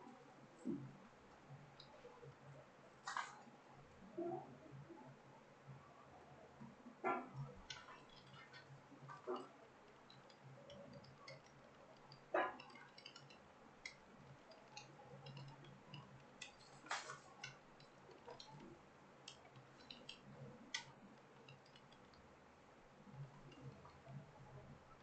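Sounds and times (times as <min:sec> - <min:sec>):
low steady hum: 0:00.0 - 0:25.0
computer keyboard typing clicks: 0:07.6 - 0:22.2.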